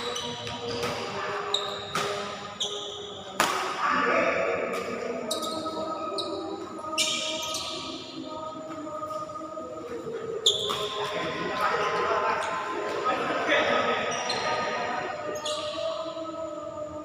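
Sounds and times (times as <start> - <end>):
shoes squeaking on court floor: 0.0 - 3.6, 4.7 - 16.1
racket striking shuttlecock: 3.4 - 3.8.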